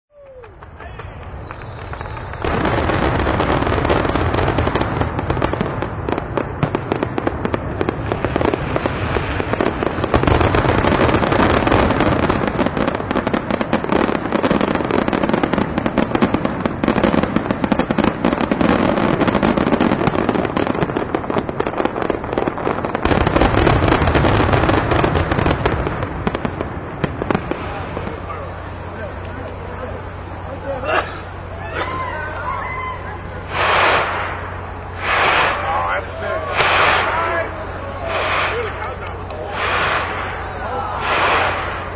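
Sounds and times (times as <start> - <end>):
fireworks bangs and crackling: 0.1 - 41.9.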